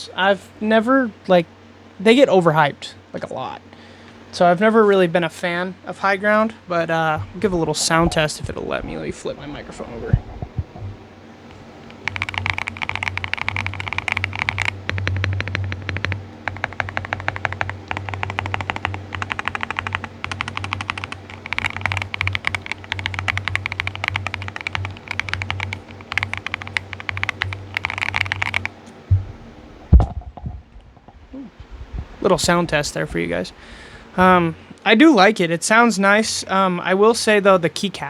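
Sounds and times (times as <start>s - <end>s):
keyboard typing: 7.2s - 28.9s.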